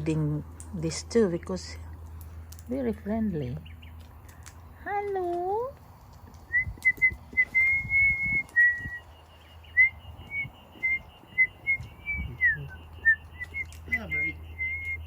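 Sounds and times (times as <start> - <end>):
high whistled notes: 6.5 - 15.0.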